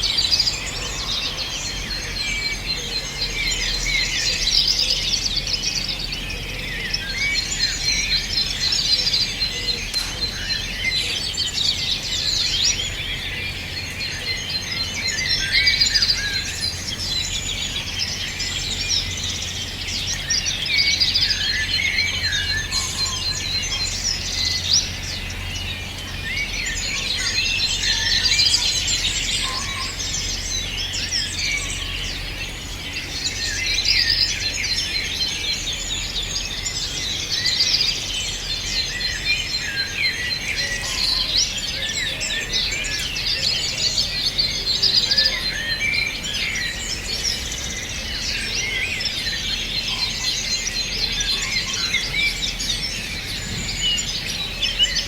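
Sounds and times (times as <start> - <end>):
songbirds chirping and singing: 0.0 - 55.0.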